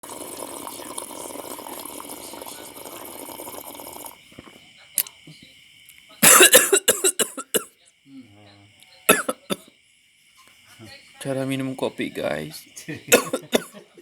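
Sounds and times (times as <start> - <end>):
liquid pouring: 0.0 - 4.2
night insects chirping: 0.1 - 14.0
person coughing harshly: 6.2 - 7.7, 9.1 - 9.6, 13.1 - 13.8.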